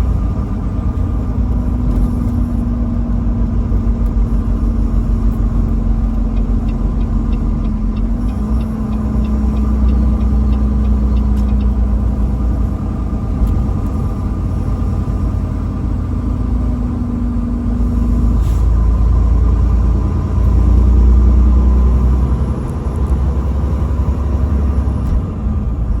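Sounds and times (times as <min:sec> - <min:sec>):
vehicle rumble and hum: 0:00.0 - 0:26.0.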